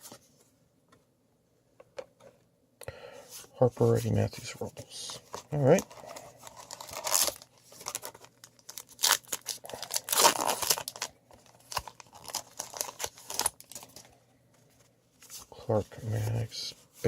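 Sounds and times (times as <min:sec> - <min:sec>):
foil wrapper ripping and crinkling: 0:05.7 - 0:14.0.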